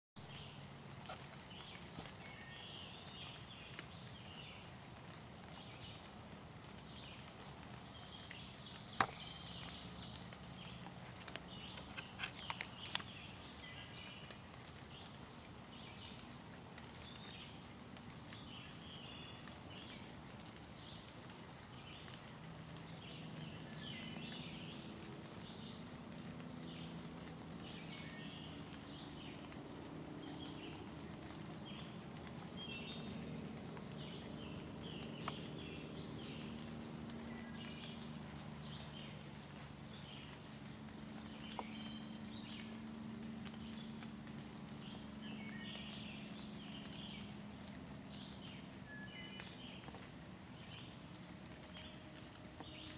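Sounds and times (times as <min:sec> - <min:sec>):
birds singing: 0:00.2 - 0:52.9
songbirds chirping: 0:00.2 - 0:52.9.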